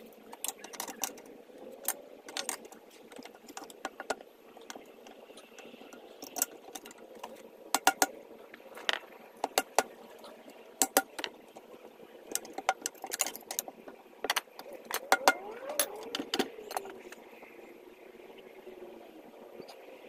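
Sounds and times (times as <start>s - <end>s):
sharp clicks and knocks: 0.2s - 10.0s, 10.8s - 11.7s, 12.3s - 17.2s.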